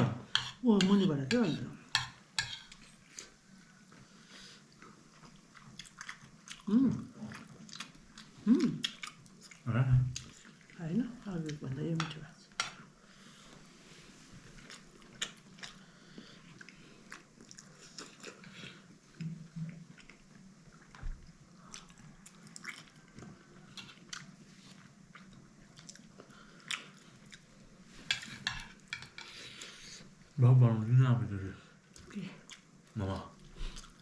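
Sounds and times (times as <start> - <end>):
chewing and biting dumplings: 4.8 - 10.6, 14.5 - 27.6.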